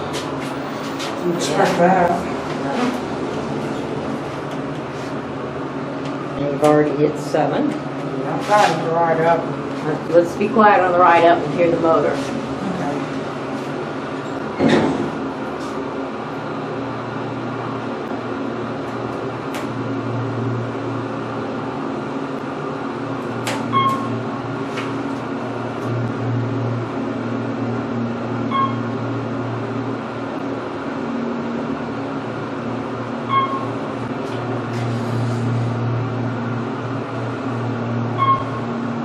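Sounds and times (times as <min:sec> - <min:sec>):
elevator motor humming: 0:00.0 - 0:39.0
short electronic beeps: 0:23.7 - 0:24.1, 0:28.5 - 0:28.9, 0:33.3 - 0:33.7, 0:38.2 - 0:38.7.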